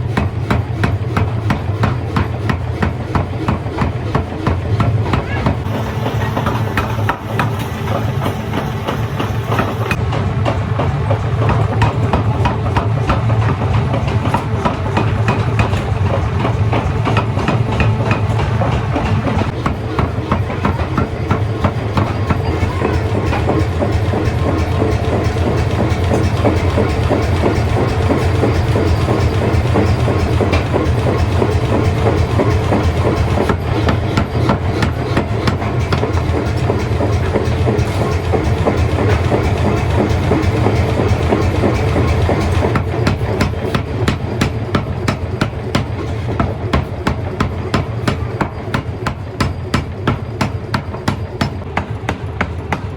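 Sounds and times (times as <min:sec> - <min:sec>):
low motor hum: 0:00.0 - 0:52.9
rapid metallic clatter: 0:00.0 - 0:52.9.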